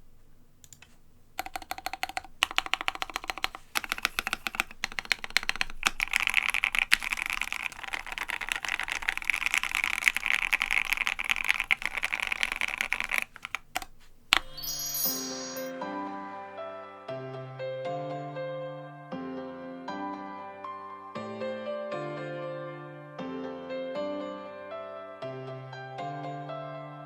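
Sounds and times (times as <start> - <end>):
rapid mechanical keyboard typing: 0.6 - 14.7.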